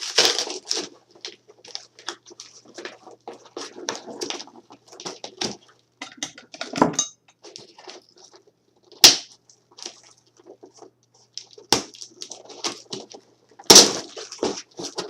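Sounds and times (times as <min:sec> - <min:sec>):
packaging rustling: 0:00.0 - 0:05.8, 0:09.8 - 0:15.0.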